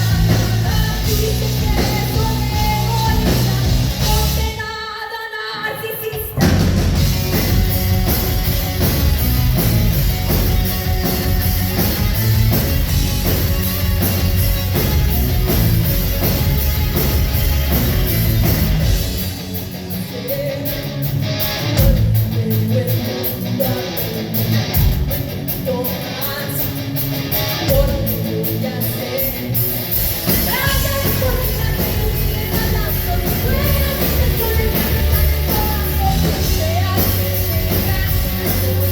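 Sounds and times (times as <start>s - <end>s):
woman singing lead vocal: 0.0s - 6.5s, 20.0s - 21.0s, 21.8s - 24.3s, 25.5s - 26.8s, 27.6s - 29.6s, 30.3s - 38.9s
rock band playing live: 0.0s - 38.9s.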